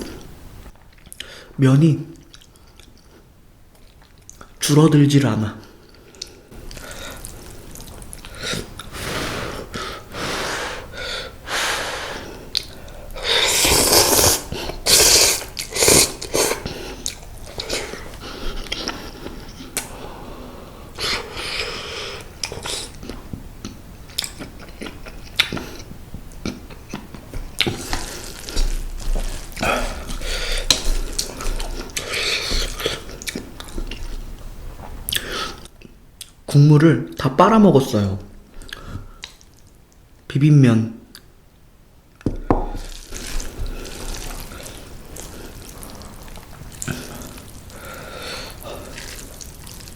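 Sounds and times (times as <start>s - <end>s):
chewing: 6.1s - 8.9s, 22.4s - 34.2s, 42.8s - 47.9s, 48.5s - 49.9s
noodles slurping: 11.5s - 19.6s, 42.8s - 49.9s.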